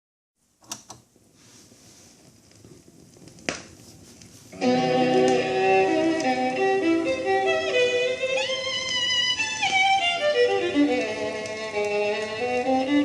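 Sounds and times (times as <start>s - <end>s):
vinyl surface hiss: 0.4s - 13.0s
vinyl pop: 2.5s - 13.0s
instrumental music with strings: 4.6s - 13.0s.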